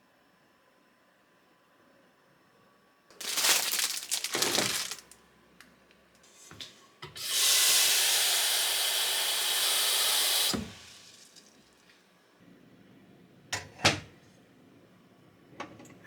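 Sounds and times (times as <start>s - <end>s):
water running from a tap: 7.2s - 11.6s.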